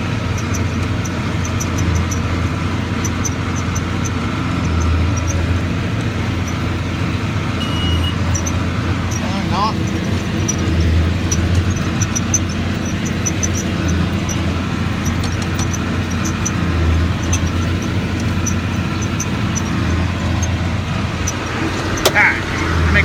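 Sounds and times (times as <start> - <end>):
tractor diesel engine running: 0.0 - 23.0
small sharp ticks: 10.1 - 20.6.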